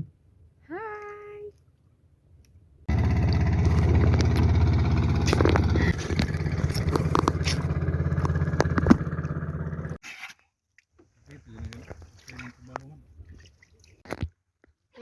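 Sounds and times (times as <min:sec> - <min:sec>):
small engine puttering: 0:02.9 - 0:10.0.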